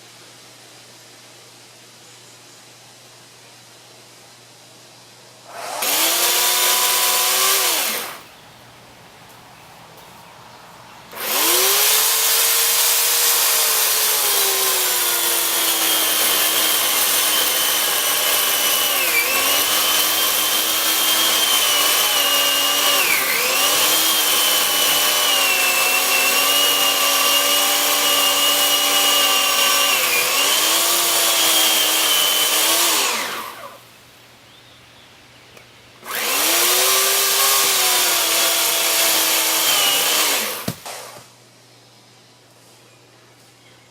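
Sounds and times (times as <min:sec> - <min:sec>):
electric chainsaw cutting wood: 0:05.5 - 0:08.2, 0:11.1 - 0:33.8, 0:36.0 - 0:41.4.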